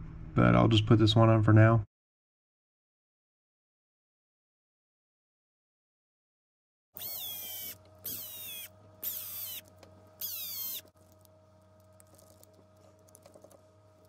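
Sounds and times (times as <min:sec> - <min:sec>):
power screwdriver whine: 0:07.0 - 0:10.9
small parts clicking: 0:07.0 - 0:13.6.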